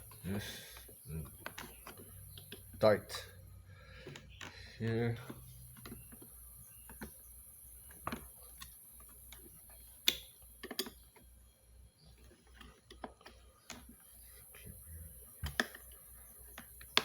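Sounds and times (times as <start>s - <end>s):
plastic parts clicking and knocking: 0.0s - 2.9s, 4.0s - 11.4s, 12.1s - 14.6s, 15.3s - 17.0s.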